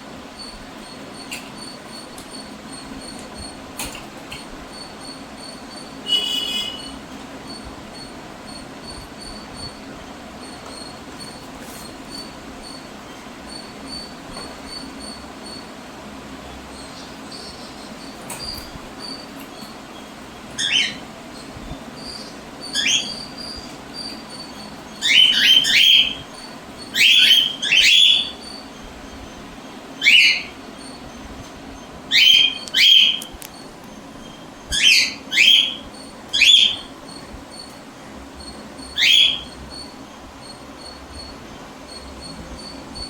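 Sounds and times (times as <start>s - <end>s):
cockatiels calling: 16.7s - 29.4s, 30.0s - 31.1s, 32.1s - 37.8s, 38.4s - 41.3s.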